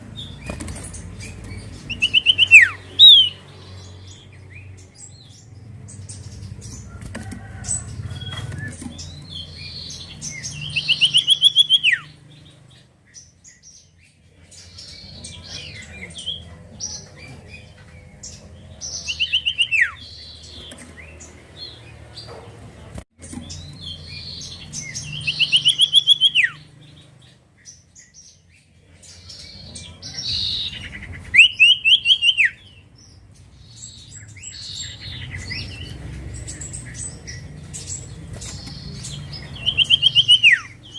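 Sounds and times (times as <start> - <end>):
soft bird chirps: 0.0 - 22.5.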